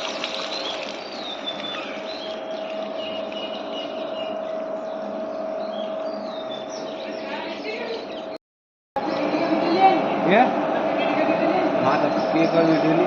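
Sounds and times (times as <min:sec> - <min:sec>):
birds chirping: 0:00.0 - 0:08.4
steady machine hum: 0:00.1 - 0:08.4.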